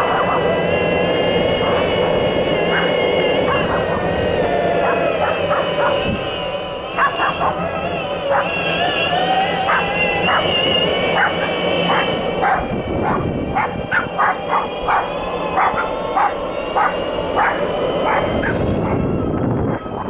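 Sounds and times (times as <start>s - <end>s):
small dog barking: 0.0s - 0.4s, 2.7s - 4.1s, 11.2s - 19.0s
steady high whine: 0.0s - 20.0s.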